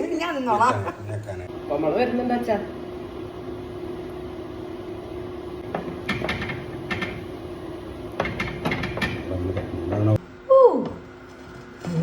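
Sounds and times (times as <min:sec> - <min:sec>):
steady hum: 0:00.0 - 0:12.0
cookware knocks and clatters: 0:05.7 - 0:07.2, 0:08.2 - 0:09.7.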